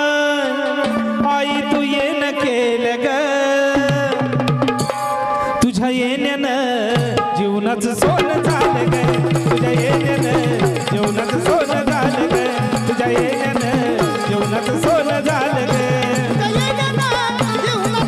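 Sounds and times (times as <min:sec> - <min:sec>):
fast hand-drum rhythm: 0:03.7 - 0:05.3, 0:06.9 - 0:18.0.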